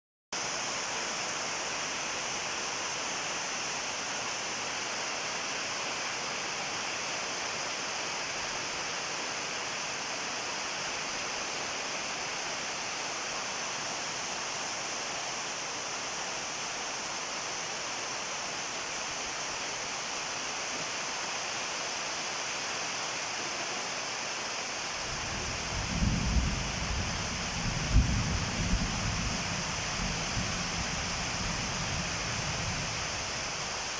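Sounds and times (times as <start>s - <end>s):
heavy rain falling: 24.7s - 33.9s.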